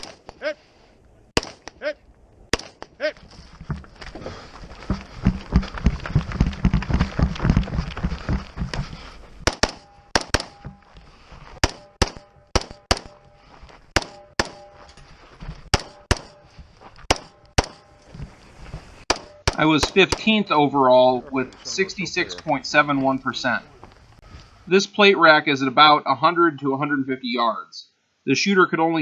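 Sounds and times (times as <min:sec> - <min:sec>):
rifle shots: 0:00.0 - 0:00.3, 0:01.4 - 0:01.8, 0:09.4 - 0:10.7, 0:11.6 - 0:13.2, 0:14.0 - 0:14.7, 0:15.7 - 0:16.4, 0:17.1 - 0:17.9
loud low rumble with knocks: 0:04.7 - 0:09.1.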